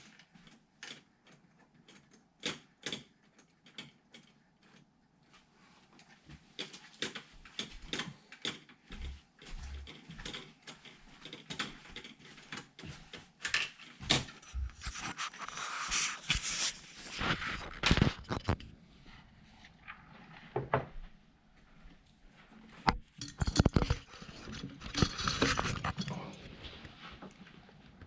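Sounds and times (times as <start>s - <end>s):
rustling and scraping: 4.6s - 21.0s, 21.6s - 28.0s.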